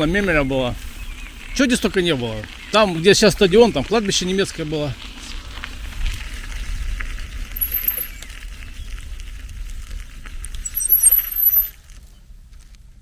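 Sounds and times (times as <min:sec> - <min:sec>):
tyre and road noise: 0:00.0 - 0:13.0
wind buffeting microphone: 0:05.5 - 0:10.7
high-pitched chirps: 0:07.6 - 0:08.2, 0:10.6 - 0:11.7.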